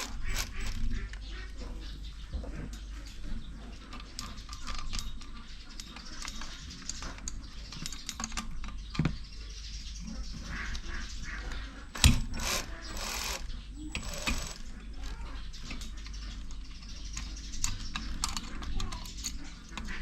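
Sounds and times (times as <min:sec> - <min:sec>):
clicks of tools and metal parts: 0:00.0 - 0:00.9, 0:11.9 - 0:16.1.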